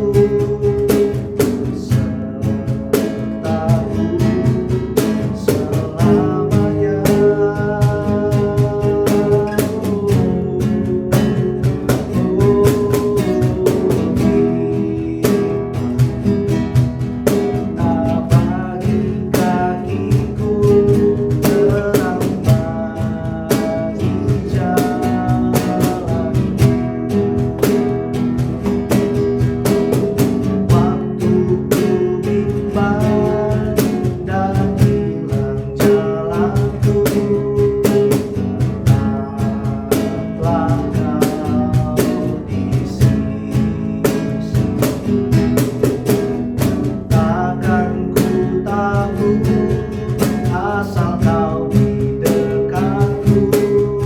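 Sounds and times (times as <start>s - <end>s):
strummed acoustic guitar: 0.0s - 54.0s
worship song music: 0.0s - 54.0s.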